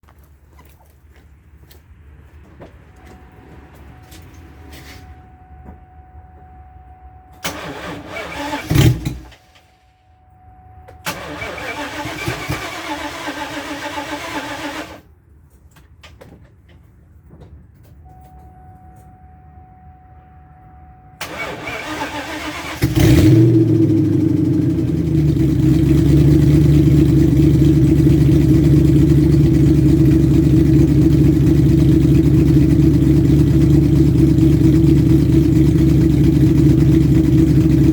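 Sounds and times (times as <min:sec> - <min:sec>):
car engine cranking: 0:07.3 - 0:09.6, 0:11.0 - 0:15.0, 0:21.2 - 0:37.9
car engine idling: 0:21.2 - 0:37.9.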